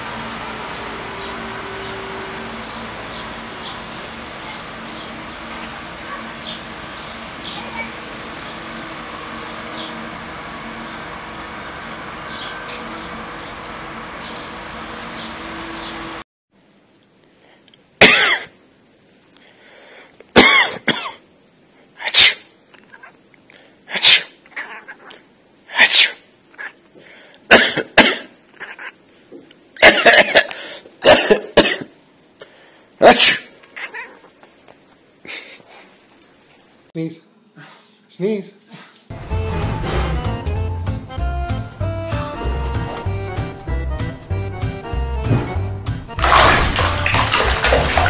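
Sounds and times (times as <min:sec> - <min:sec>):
chicken sneezing: 0:22.0 - 0:22.5, 0:23.9 - 0:24.4, 0:25.7 - 0:26.3.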